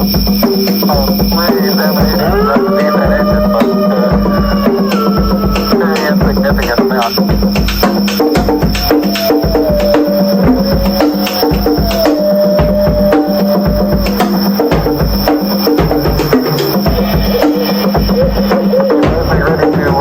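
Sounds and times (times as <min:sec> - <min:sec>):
drum solo: 0:00.0 - 0:20.0
thin tone sliding downward: 0:08.0 - 0:19.1.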